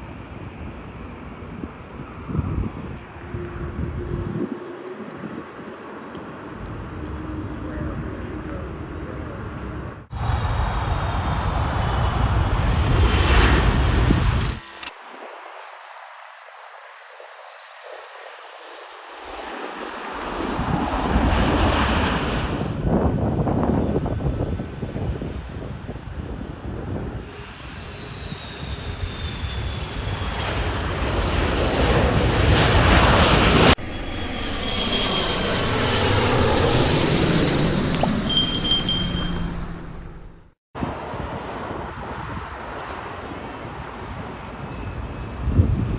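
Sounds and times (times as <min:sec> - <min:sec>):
jet engine whine: 0:00.0 - 0:08.8, 0:10.2 - 0:14.9, 0:26.2 - 0:38.0
jet engines passing overhead: 0:00.0 - 0:38.0, 0:40.8 - 0:45.9.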